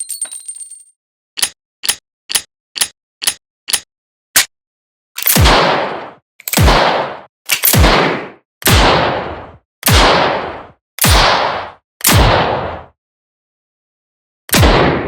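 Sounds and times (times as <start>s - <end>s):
revolver gunshots: 5.2s - 12.8s, 14.5s - 15.0s.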